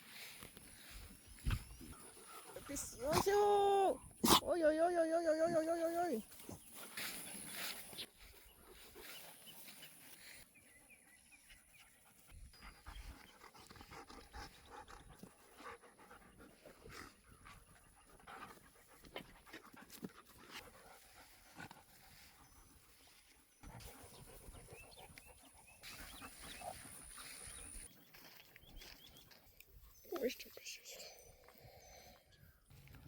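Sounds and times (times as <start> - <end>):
dog panting: 11.9 - 22.8, 23.6 - 27.9.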